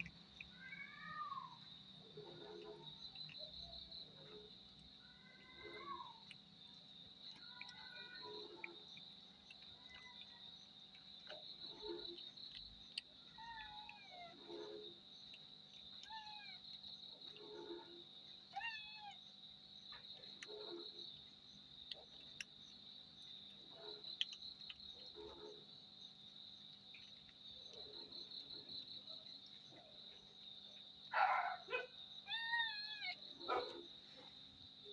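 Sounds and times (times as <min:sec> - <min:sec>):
insects chirring: 0:00.0 - 0:34.9
cat meowing faintly: 0:00.5 - 0:01.6, 0:05.1 - 0:06.2, 0:16.0 - 0:16.6, 0:18.5 - 0:19.2, 0:32.3 - 0:33.2.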